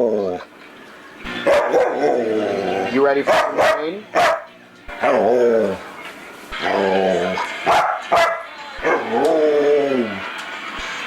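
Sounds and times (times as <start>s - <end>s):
dog howling: 0.0s - 0.5s, 1.5s - 5.9s, 6.6s - 10.2s.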